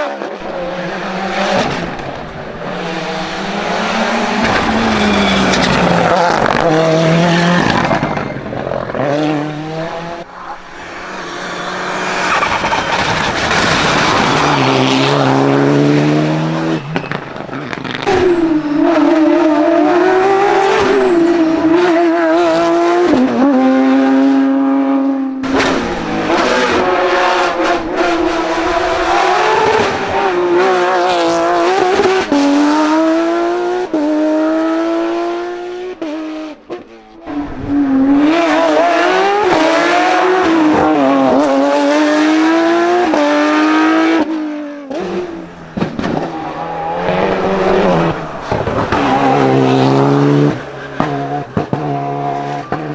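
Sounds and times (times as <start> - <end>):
race cars accelerating: 0.0 - 52.9.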